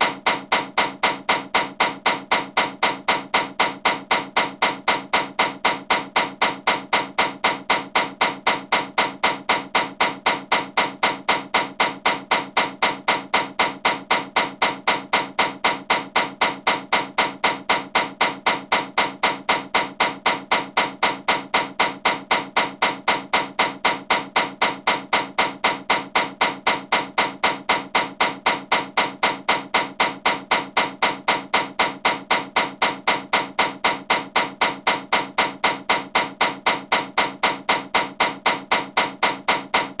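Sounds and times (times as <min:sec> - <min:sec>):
repeating knock of fan: 0:00.0 - 0:40.0.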